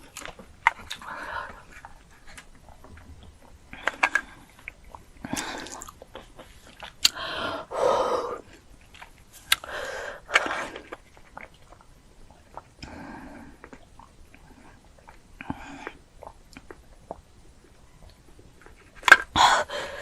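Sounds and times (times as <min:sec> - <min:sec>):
person chewing with clicks: 0:00.0 - 0:07.2, 0:08.4 - 0:19.4.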